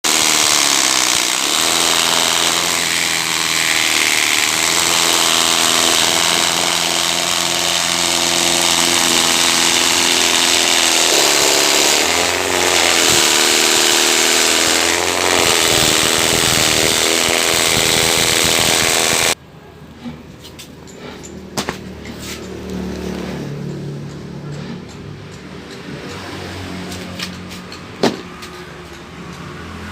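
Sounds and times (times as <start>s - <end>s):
carpet beating machine running: 0.0s - 19.4s.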